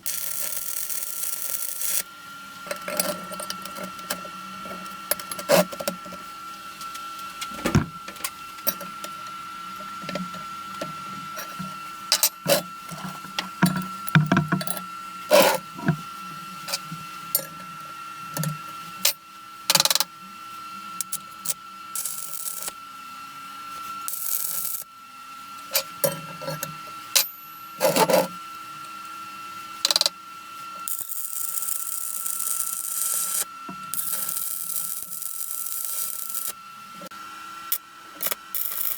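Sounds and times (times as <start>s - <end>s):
metal parts and tools clinking: 12.1s - 15.9s.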